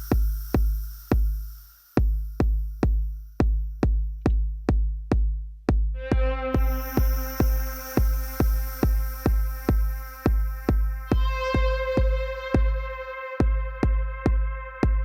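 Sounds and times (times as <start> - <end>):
high hiss: 0.0 - 2.8, 6.6 - 13.4
drum machine kick drum: 0.0 - 15.0
held synth note: 6.1 - 13.4.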